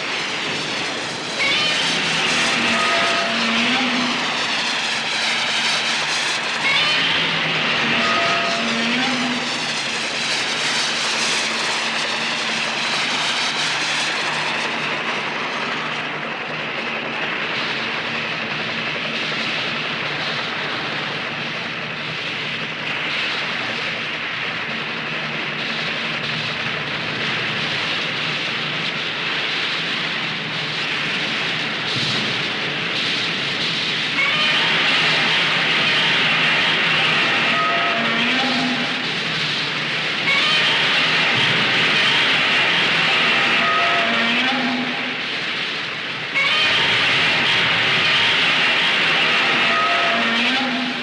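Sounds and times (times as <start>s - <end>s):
jet engine rushing: 0.0s - 51.0s.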